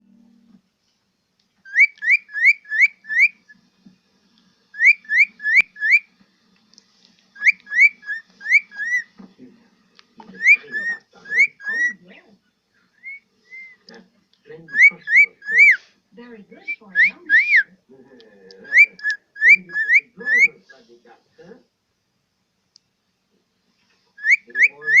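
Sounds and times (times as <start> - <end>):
bird whistling rising notes: 4.8 - 6.1, 13.0 - 13.8.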